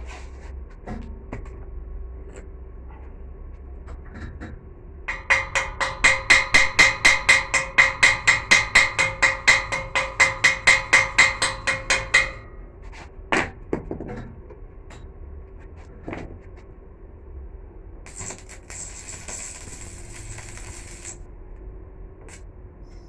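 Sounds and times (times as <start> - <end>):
hammer striking steel: 5.1 - 12.6.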